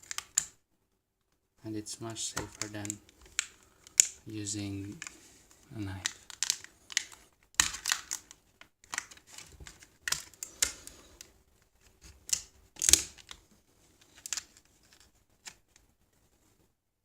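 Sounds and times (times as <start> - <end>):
stiff plastic clicks: 2.3 - 4.2, 5.9 - 11.3, 11.9 - 13.4.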